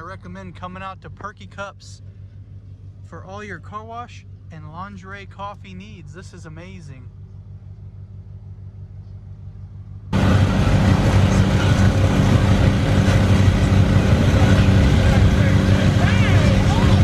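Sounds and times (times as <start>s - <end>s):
car engine idling: 0.0s - 17.0s
loud rough rushing noise: 10.1s - 17.0s.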